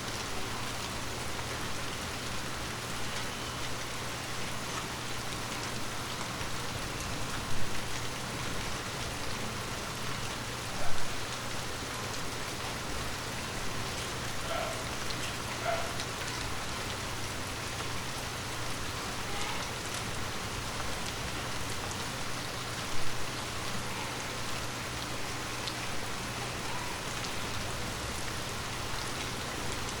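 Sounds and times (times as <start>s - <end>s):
light rain falling: 0.0s - 30.0s.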